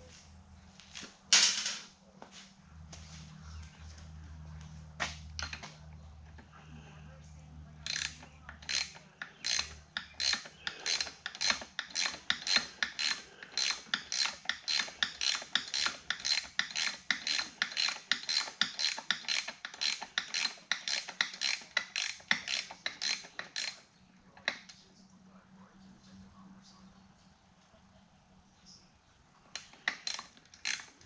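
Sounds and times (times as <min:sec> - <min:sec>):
ratchet wrench clicking: 0:07.8 - 0:23.8, 0:29.6 - 0:31.0.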